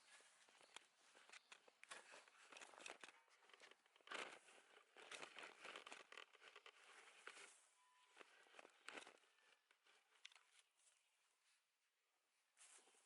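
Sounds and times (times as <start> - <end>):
rustling and crunching: 0.0 - 11.1
scattered clicks: 0.4 - 7.5.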